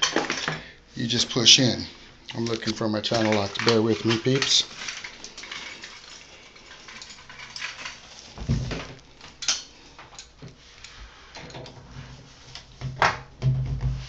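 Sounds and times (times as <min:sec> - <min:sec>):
metal hand tools clinking: 0:02.3 - 0:08.4.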